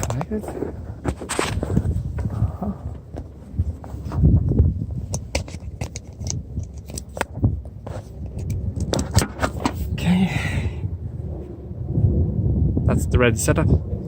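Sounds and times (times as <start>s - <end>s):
wiring connectors clicking and rattling: 0.0s - 2.3s, 3.9s - 9.8s.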